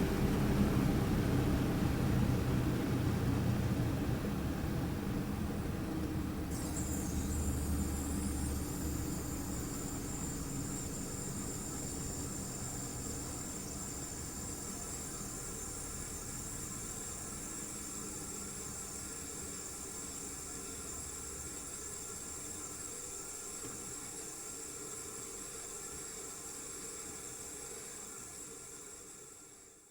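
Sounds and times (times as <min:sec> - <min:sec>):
air conditioner compressor hum: 0:00.0 - 0:25.7
high-pitched compressor whine: 0:06.1 - 0:22.9.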